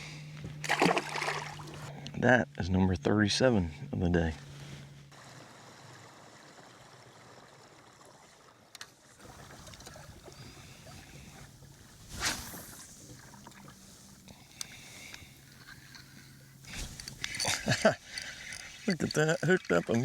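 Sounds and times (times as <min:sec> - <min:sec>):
water lapping against kayak hull: 0:00.6 - 0:01.9, 0:09.2 - 0:20.0.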